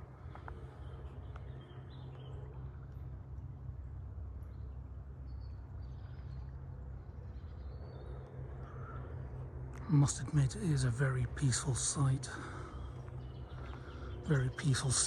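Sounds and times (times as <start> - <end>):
steady low rumble: 0.0 - 15.0
faint bird chirps: 4.4 - 15.0.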